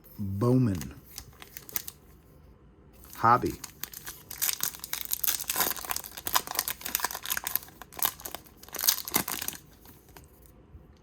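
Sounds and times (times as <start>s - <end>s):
wrapper tearing and crinkling: 1.2s - 2.0s, 3.1s - 10.3s.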